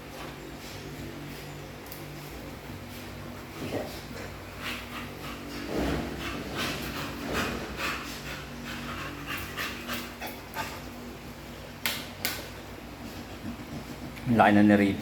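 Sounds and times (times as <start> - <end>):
dog panting: 3.4 - 11.0.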